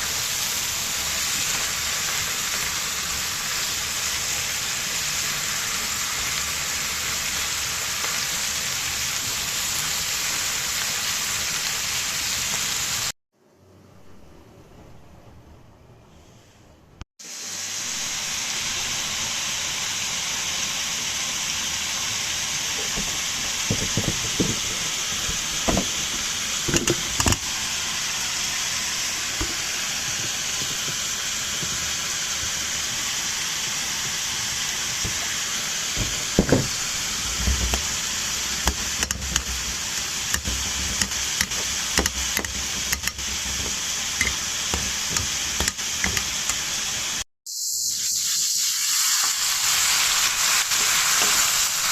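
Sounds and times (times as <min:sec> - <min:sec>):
food sizzling in a pan: 0:00.0 - 0:13.2, 0:17.2 - 0:51.9
utensil tapping pan: 0:22.8 - 0:27.5, 0:36.0 - 0:46.7.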